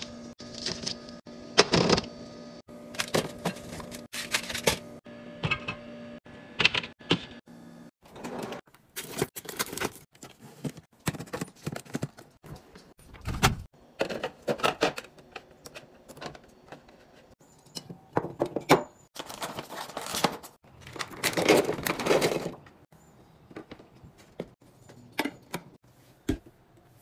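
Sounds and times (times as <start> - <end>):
containers clattering: 18.2 - 22.8.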